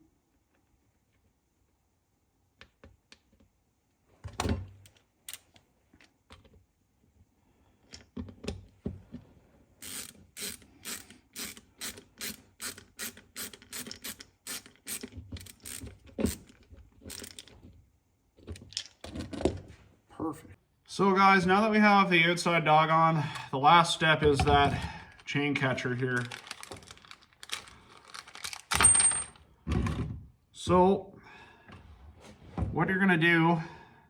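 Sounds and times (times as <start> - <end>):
ratchet wrench clicking: 9.8 - 16.4.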